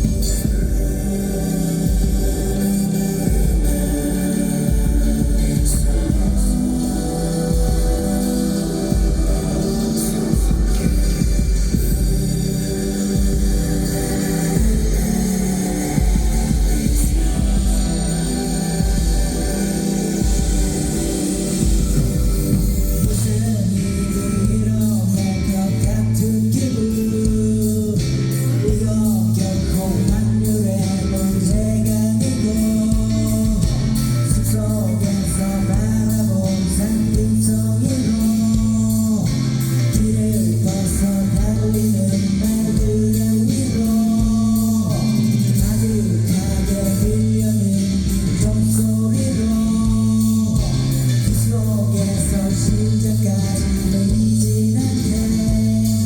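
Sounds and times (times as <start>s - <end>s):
guitar: 0.0s - 56.0s
person singing: 0.0s - 56.0s
repeating bass line: 0.0s - 56.0s.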